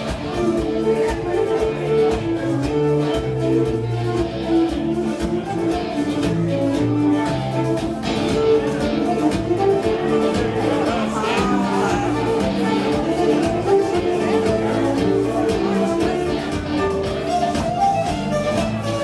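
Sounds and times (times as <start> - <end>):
live folk dance band: 0.0 - 19.0
guitar strumming: 5.3 - 17.4.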